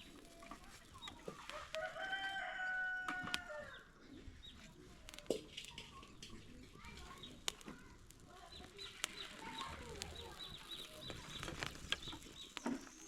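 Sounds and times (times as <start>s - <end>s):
rooster crowing: 1.5s - 3.9s.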